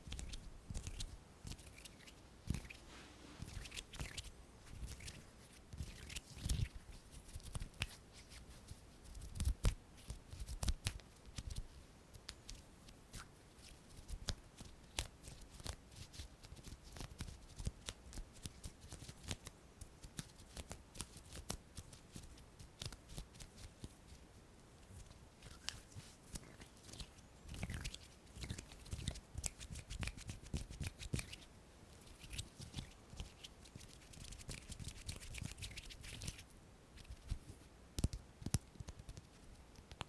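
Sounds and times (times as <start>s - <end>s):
finger clicks and taps: 38.0s - 40.0s.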